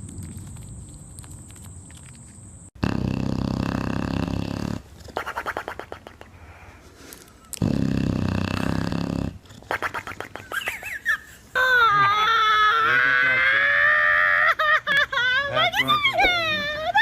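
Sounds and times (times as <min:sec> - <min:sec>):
animal rough vocal sounds: 0:02.8 - 0:06.4, 0:07.6 - 0:10.5.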